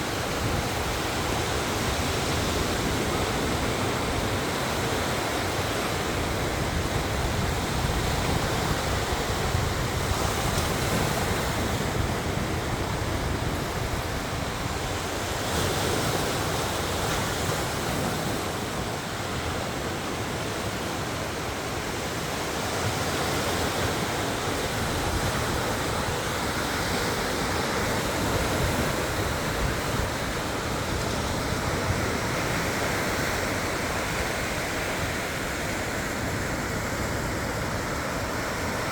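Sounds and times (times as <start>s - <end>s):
wind buffeting microphone: 0.0s - 18.8s
sea surf breaking: 0.0s - 38.9s.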